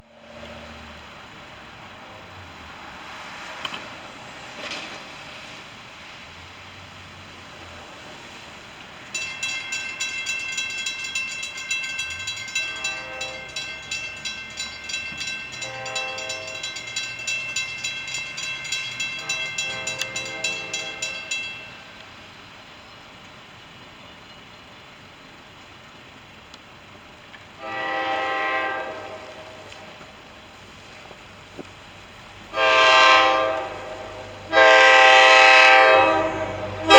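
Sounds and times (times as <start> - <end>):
bell ringing rapidly: 9.1 - 21.9
locomotive horn blasts: 11.5 - 17.2, 19.0 - 21.5, 27.6 - 30.0, 32.5 - 36.9.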